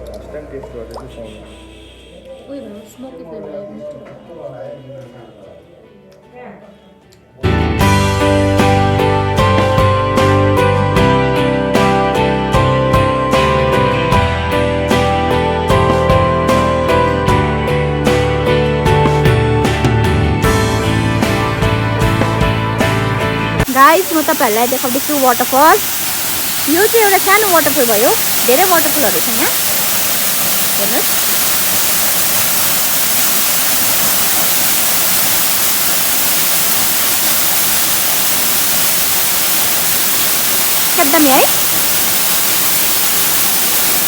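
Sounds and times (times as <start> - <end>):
acoustic guitar music with beat: 18.1 - 23.7
waterfall rushing: 23.7 - 44.0.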